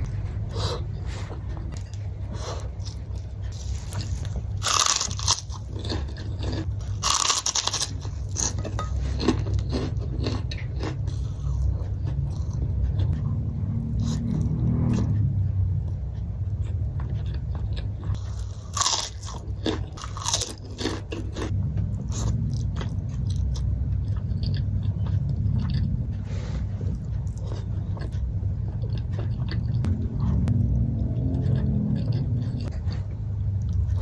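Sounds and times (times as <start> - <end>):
chewing: 0.2 - 34.0
crunchy cracker bites: 3.8 - 8.5.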